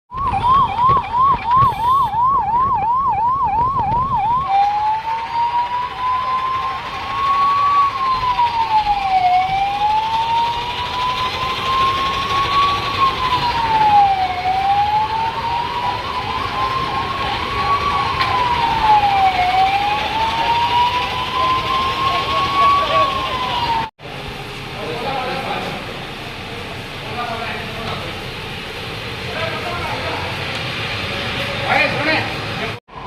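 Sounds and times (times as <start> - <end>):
siren wailing: 0.1 - 23.9.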